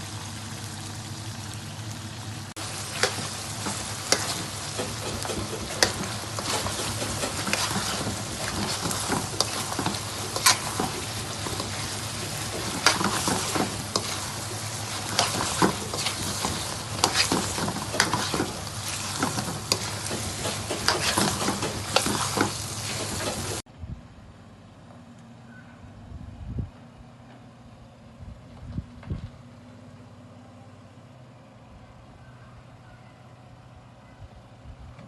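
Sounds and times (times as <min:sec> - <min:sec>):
food sizzling in a pan: 0:00.0 - 0:23.6
spoon scraping against a pan: 0:02.7 - 0:23.6.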